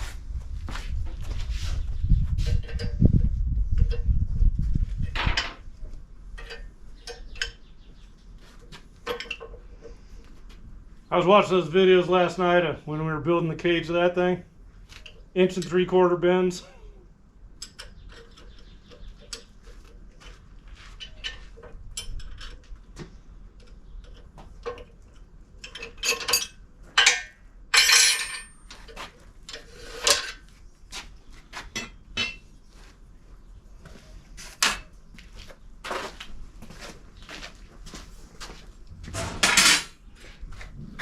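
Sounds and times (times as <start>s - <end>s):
metal tools clinking and knocking: 6.4s - 7.7s, 9.0s - 9.7s, 21.0s - 22.6s, 23.6s - 30.4s, 31.7s - 32.5s, 39.1s - 40.0s.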